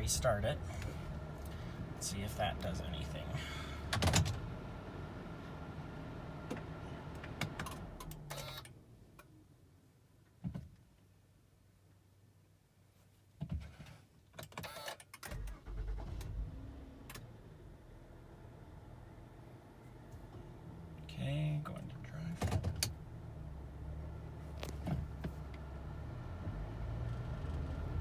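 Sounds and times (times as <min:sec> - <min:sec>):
car engine idling: 0:00.0 - 0:08.3, 0:15.4 - 0:28.0.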